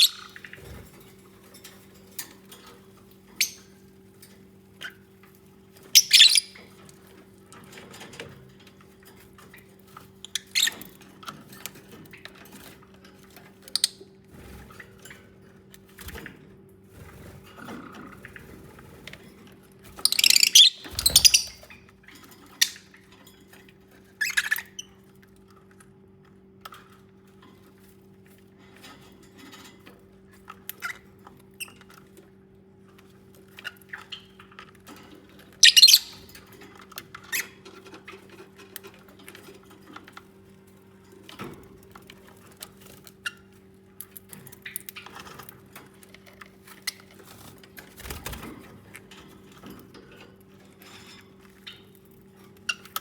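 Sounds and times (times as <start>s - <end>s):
lovebirds chirping shrilly: 0.0s - 0.5s, 6.0s - 6.6s, 20.0s - 21.6s, 35.6s - 36.2s.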